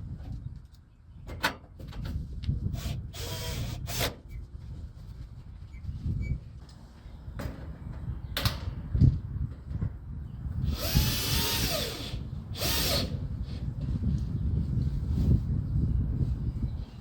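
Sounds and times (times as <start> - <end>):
power drill running: 2.8 - 4.0, 10.7 - 13.2.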